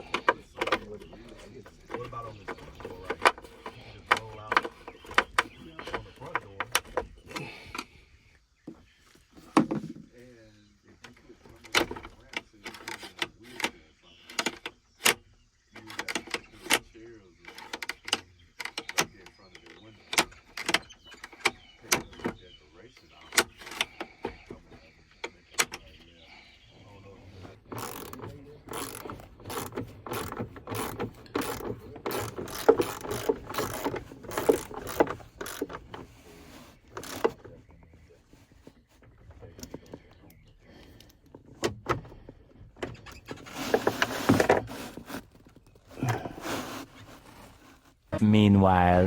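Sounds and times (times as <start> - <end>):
hand tools clicking on metal: 27.8 - 35.8.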